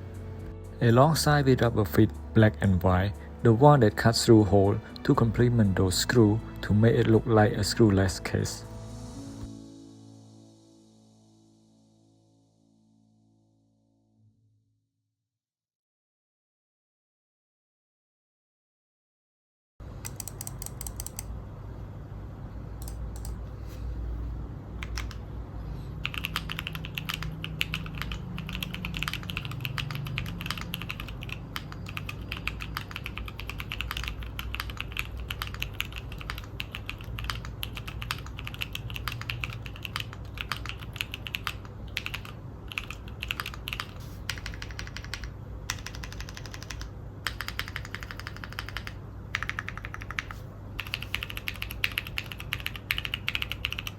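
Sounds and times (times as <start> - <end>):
mechanical keyboard typing: 20.0 - 21.3, 24.8 - 25.2, 26.0 - 53.9.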